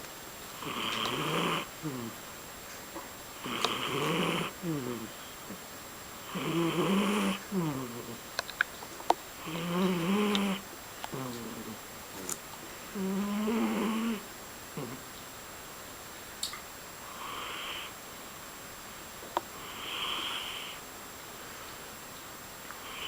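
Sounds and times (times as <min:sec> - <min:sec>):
cat snoring: 0:00.6 - 0:02.2, 0:03.4 - 0:05.3, 0:06.2 - 0:08.2, 0:09.4 - 0:12.3, 0:12.9 - 0:14.2, 0:14.8 - 0:15.1, 0:17.1 - 0:17.9, 0:19.6 - 0:20.8.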